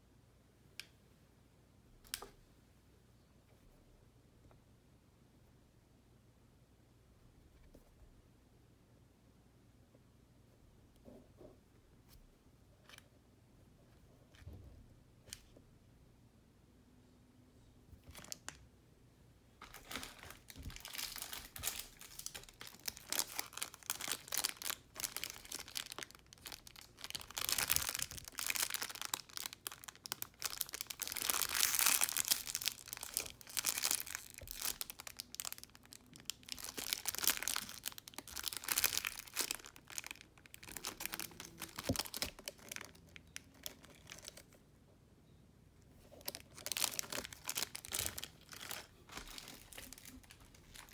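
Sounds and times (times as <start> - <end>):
plastic wrapping crinkling: 19.6 - 44.5, 46.0 - 50.9.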